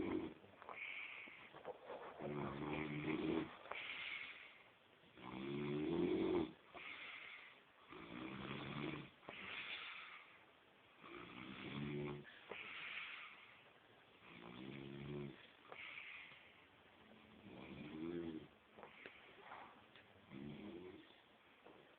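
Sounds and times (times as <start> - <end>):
man snoring: 0.0 - 0.4, 2.3 - 3.5, 5.2 - 6.6, 7.9 - 9.2, 11.0 - 12.3, 14.2 - 15.4, 17.3 - 18.5, 20.3 - 21.1.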